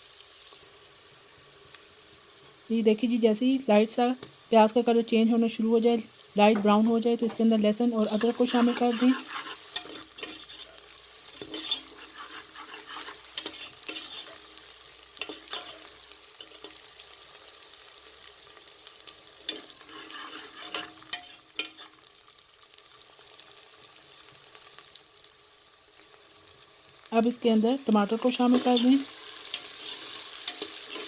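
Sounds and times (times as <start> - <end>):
onions sizzling in hot oil: 0.0 - 31.0
spoon scraping pot: 6.5 - 14.5, 15.2 - 16.8, 19.5 - 21.9, 28.5 - 31.0.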